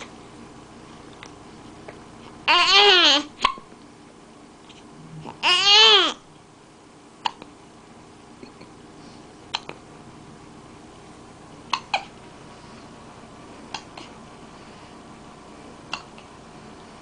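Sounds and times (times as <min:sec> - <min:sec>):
hiccups: 0:03.4 - 0:03.6, 0:07.2 - 0:07.5, 0:11.7 - 0:12.1, 0:15.9 - 0:16.1.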